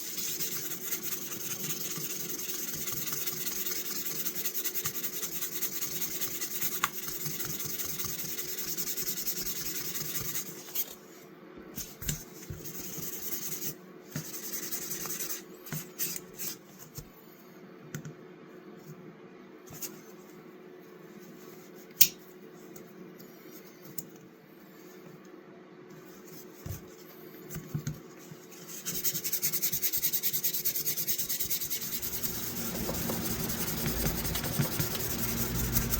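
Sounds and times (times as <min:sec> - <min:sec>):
sandpaper rubbing on knife blade: 0:00.0 - 0:10.7, 0:28.6 - 0:35.9.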